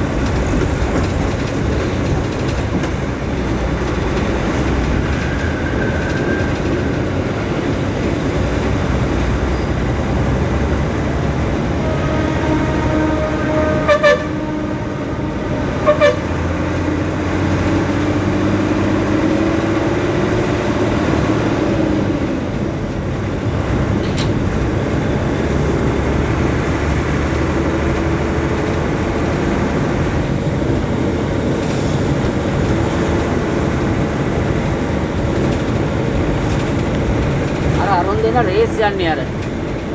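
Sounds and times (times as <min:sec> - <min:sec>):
traffic engine and road noise: 0:00.0 - 0:39.9
vehicle horn: 0:11.5 - 0:17.0.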